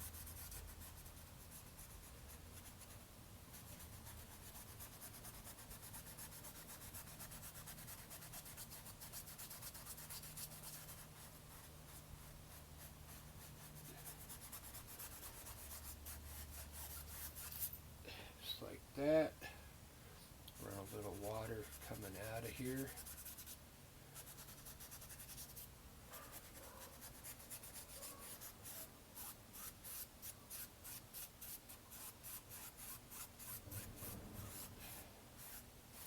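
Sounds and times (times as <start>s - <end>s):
paintbrush rubbing on canvas: 20.6s - 23.6s, 26.5s - 36.0s.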